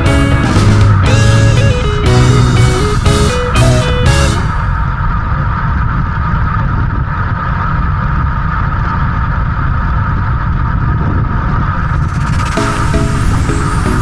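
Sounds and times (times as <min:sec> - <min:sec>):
music: 0:00.0 - 0:04.6, 0:12.5 - 0:14.0
wind buffeting microphone: 0:00.0 - 0:14.0.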